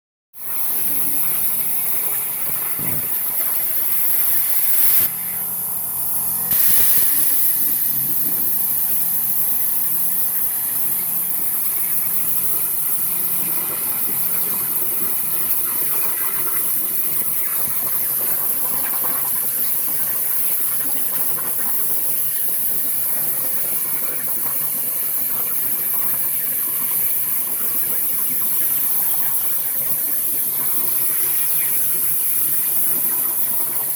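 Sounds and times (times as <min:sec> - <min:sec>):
plasma torch hissing: 0:00.4 - 0:14.4.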